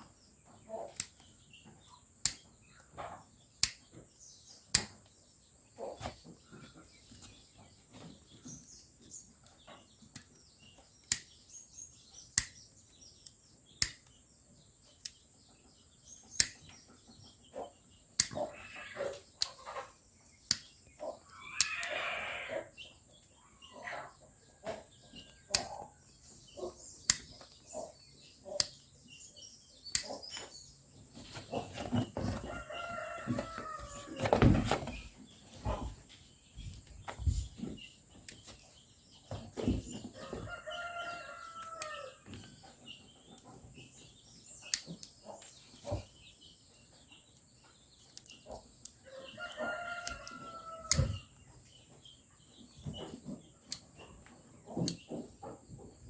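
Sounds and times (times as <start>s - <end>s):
sharp clicks: 2.2s - 2.5s, 3.6s - 3.9s, 11.0s - 11.4s, 12.4s - 12.6s, 13.2s - 14.2s, 16.4s - 16.7s, 18.2s - 18.5s, 20.4s - 22.0s, 25.5s - 25.8s, 27.0s - 27.6s, 29.9s - 30.5s
rooster crowing: 32.4s - 34.4s, 40.2s - 42.2s, 49.1s - 51.2s.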